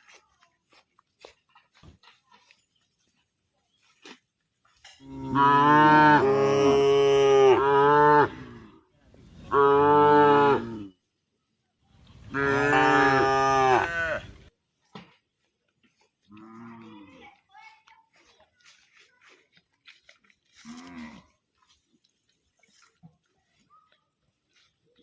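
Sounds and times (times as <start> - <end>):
cow mooing: 5.0 - 8.6, 12.3 - 14.3.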